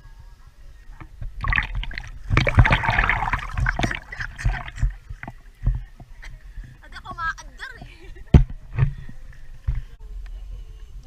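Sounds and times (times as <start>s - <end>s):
water splashing: 1.0s - 6.8s.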